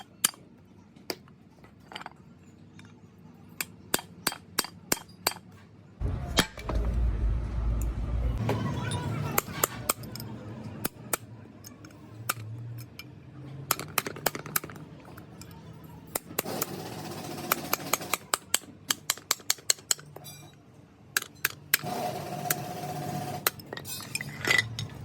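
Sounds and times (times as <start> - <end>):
low background murmur: 0.0 - 19.4
hand tools tapping on metal: 3.6 - 5.6, 17.7 - 20.6.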